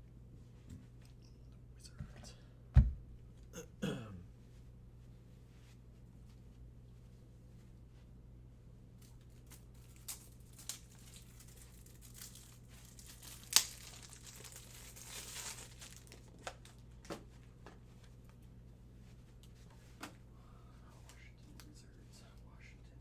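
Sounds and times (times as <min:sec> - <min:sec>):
wrapper tearing and crinkling: 0:09.0 - 0:16.8.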